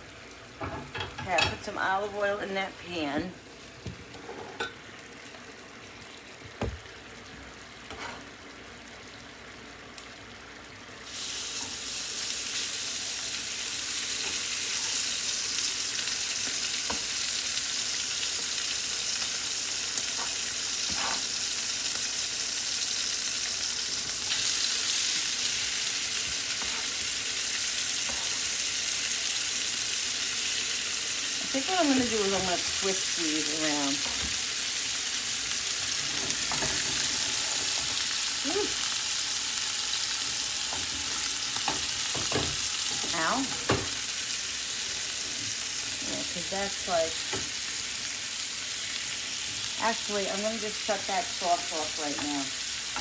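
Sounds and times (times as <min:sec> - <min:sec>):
food sizzling in frying pan: 0:00.0 - 0:53.0
utensils knocking on pan: 0:40.7 - 0:44.0.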